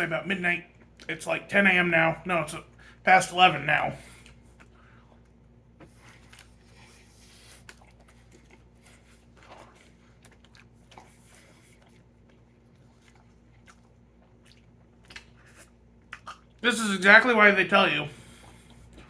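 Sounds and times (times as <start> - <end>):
person chewing sandwich: 4.0 - 16.6, 18.2 - 19.0.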